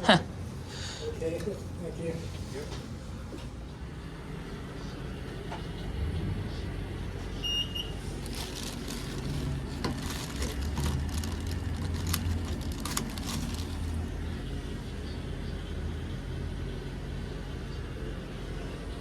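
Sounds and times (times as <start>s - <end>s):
road traffic rumble: 0.0s - 19.0s
sharp clicks and rattles: 8.2s - 14.1s.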